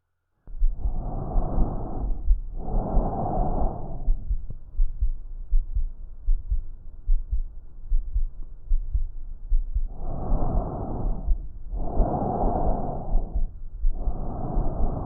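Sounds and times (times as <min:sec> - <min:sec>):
breath sound through stethoscope: 0:00.5 - 0:05.2, 0:09.5 - 0:15.0
heartbeat thumps: 0:00.5 - 0:15.0.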